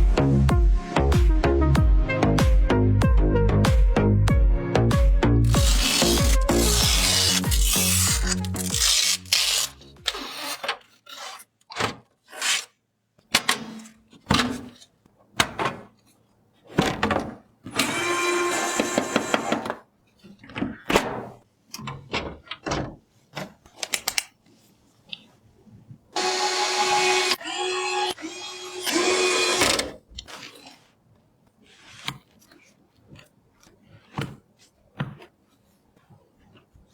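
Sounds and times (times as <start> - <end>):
mechanical sound: 5.4 - 10.6
rubbing noise: 5.5 - 9.7.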